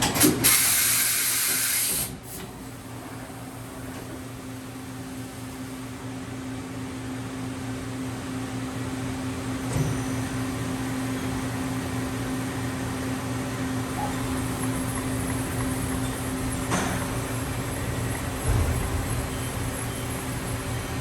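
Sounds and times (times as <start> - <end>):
machining center humming: 12.1 - 21.0.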